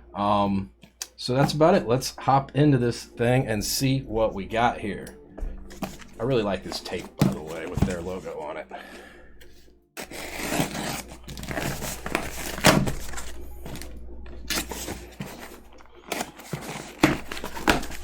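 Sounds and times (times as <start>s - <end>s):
packaging rustling: 5.7s - 9.0s, 10.0s - 18.0s
packing tape tearing: 10.0s - 13.9s, 14.5s - 18.0s.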